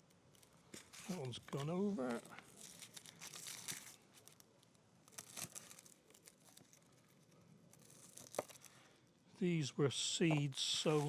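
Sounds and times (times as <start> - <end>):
papery shallot skins crackling: 0.3 - 8.9, 10.8 - 11.0.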